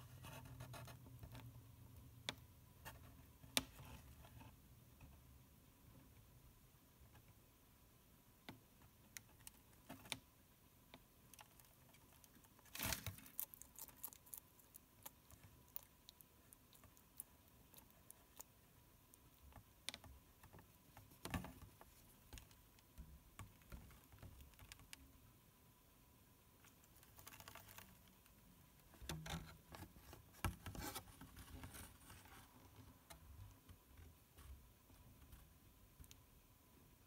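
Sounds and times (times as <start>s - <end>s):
lizard chewing food: 11.4s - 19.9s.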